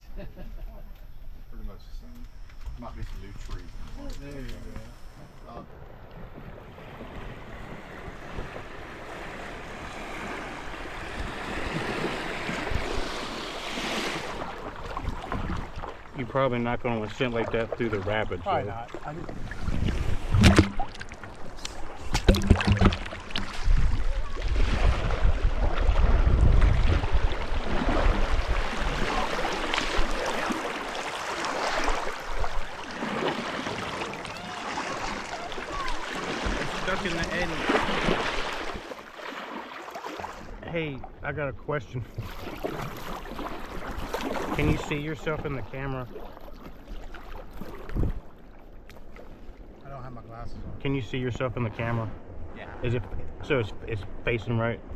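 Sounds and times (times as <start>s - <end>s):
wind rumbling on microphone: 2.3s - 16.0s, 17.5s - 33.2s, 47.6s - 48.3s
rushing river water: 6.6s - 41.0s, 42.2s - 50.1s.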